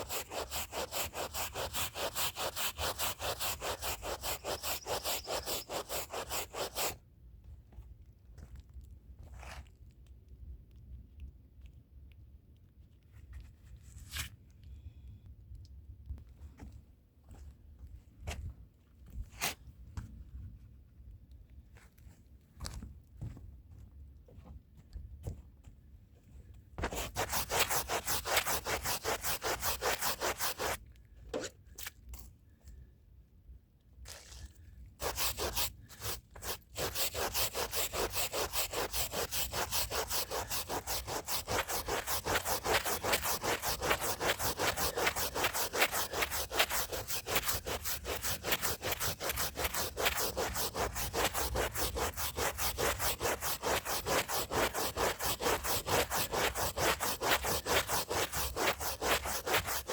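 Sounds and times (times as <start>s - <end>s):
hand brush scrubbing a rug: 0.0s - 7.0s, 26.8s - 30.8s, 35.0s - 59.9s.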